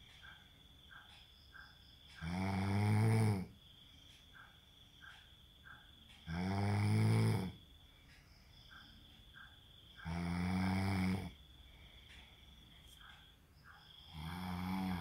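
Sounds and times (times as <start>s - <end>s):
man snoring: 2.2s - 3.6s, 6.3s - 7.6s, 10.0s - 11.4s, 14.1s - 15.0s.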